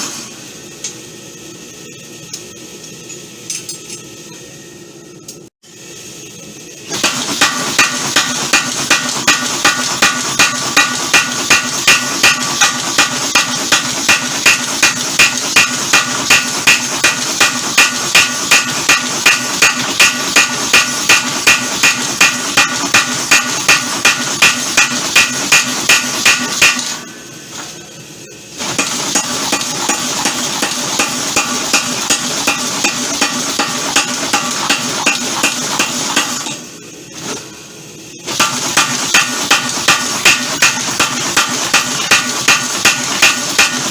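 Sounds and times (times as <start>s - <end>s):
machine clatter: 6.9s - 27.0s, 28.6s - 37.5s, 38.2s - 43.9s
power hammer striking hot steel: 6.9s - 27.2s, 28.6s - 37.4s, 38.2s - 43.9s.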